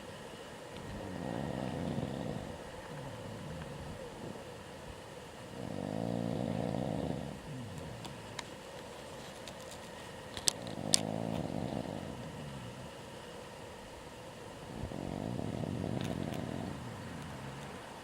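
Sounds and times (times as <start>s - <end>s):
person snoring: 0.8s - 4.4s, 5.5s - 8.4s, 10.7s - 13.0s, 14.7s - 17.8s
soft breathing: 0.8s - 4.6s, 5.4s - 13.4s.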